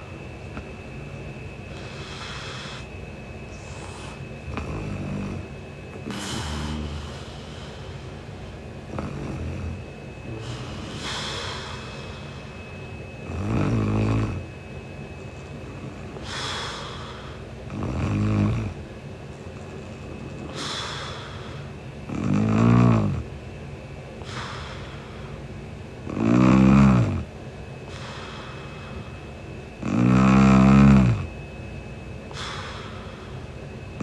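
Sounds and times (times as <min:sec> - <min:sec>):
soft airy breath: 0:01.6 - 0:17.9, 0:18.7 - 0:22.0, 0:24.0 - 0:25.7, 0:27.2 - 0:29.5, 0:32.2 - 0:34.0
woman snoring: 0:01.7 - 0:02.9, 0:03.5 - 0:12.6, 0:13.2 - 0:14.5, 0:15.7 - 0:18.8, 0:19.9 - 0:23.4, 0:26.0 - 0:29.2, 0:29.8 - 0:31.4.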